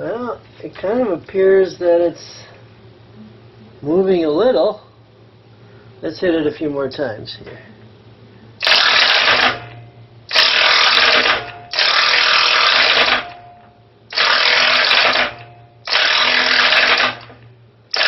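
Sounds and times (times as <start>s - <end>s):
impact wrench hammering: 8.6s - 13.5s, 14.1s - 17.4s.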